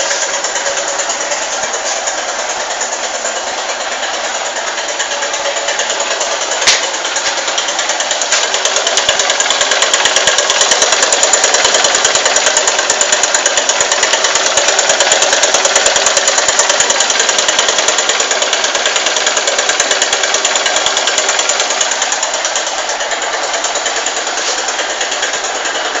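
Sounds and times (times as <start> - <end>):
motorcycle engine ticking: 0.0 - 26.0.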